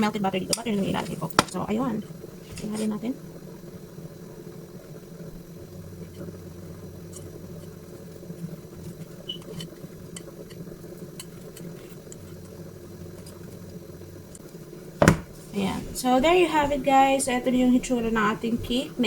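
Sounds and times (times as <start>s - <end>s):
kitchen appliance humming: 0.0s - 19.0s
kitchenware clicks and taps: 15.0s - 15.4s.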